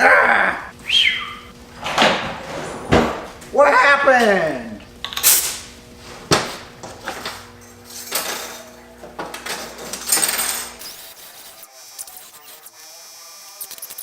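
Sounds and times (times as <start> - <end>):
steady low hum: 0.0 - 11.9
metal tools clinking on workbench: 7.0 - 10.8.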